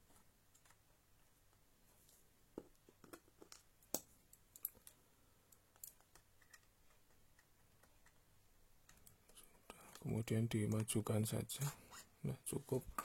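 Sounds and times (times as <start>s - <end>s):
laptop parts clicking and tapping: 5.6s - 8.2s.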